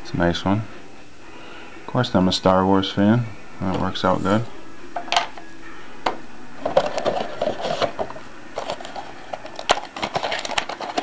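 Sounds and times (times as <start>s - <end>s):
cards rustling: 6.6s - 11.0s.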